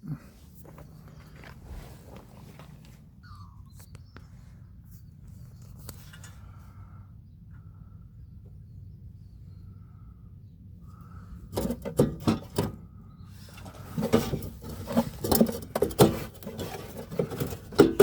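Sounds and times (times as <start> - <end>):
fuel filler neck knocking and rattling: 11.4 - 12.9, 13.5 - 18.0.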